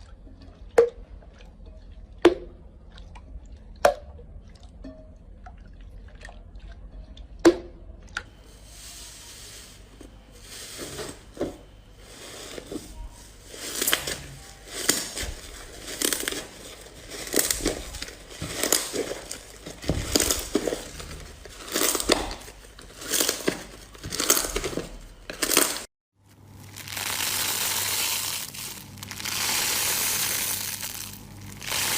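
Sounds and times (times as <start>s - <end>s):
slime crackling when squeezed: 26.6s - 31.9s.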